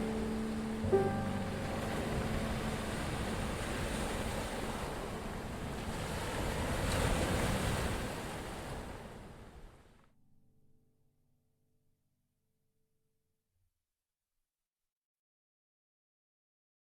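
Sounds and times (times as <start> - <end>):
ocean waves on shore: 0.0 - 10.1.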